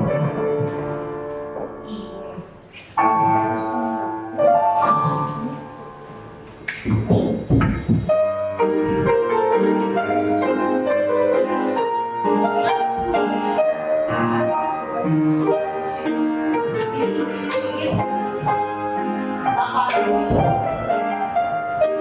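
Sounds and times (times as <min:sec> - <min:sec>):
piano music: 0:00.0 - 0:22.0.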